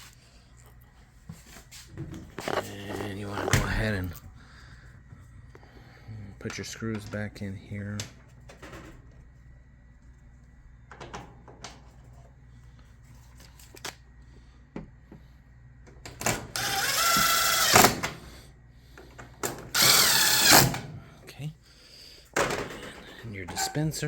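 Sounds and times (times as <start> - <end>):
power drill-driver whining: 2.4 - 4.0, 16.3 - 18.2, 19.7 - 20.9.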